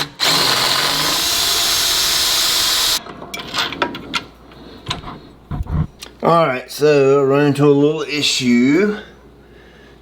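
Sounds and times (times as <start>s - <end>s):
power drill boring through metal: 0.0s - 3.0s.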